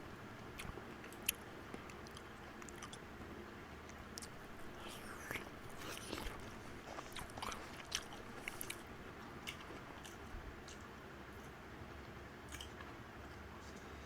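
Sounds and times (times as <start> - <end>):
person chewing noodles: 0.4 - 11.6, 12.5 - 13.9
soft mouth clicks: 4.2 - 8.9.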